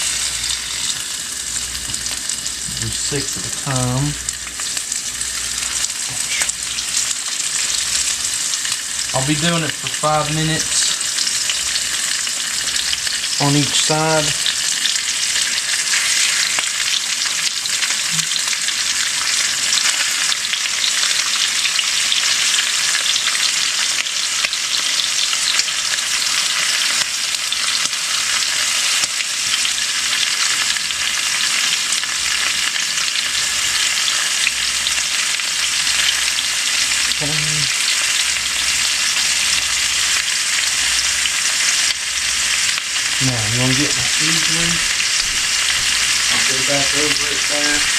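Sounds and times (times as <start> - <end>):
chicken sizzling in a pan: 0.0 - 47.9.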